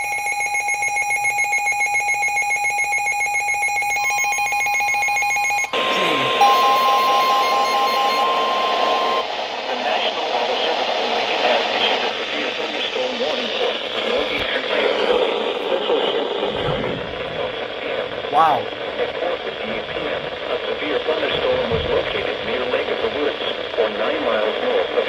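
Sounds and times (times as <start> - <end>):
pulsing alarm tone: 0.0 - 9.4
steady alert tone: 5.7 - 9.2
loud radio hiss and static: 5.7 - 25.0.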